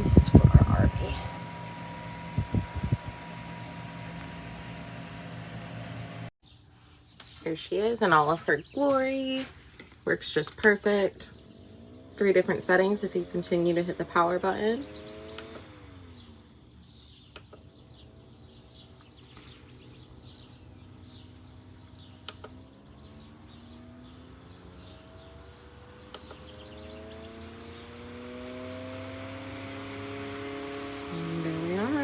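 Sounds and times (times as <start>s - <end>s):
fan motor humming: 0.0s - 6.3s, 7.7s - 32.0s.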